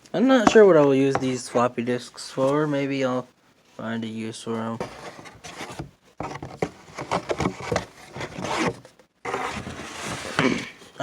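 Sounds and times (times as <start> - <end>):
rustling and scraping: 4.5 - 11.0.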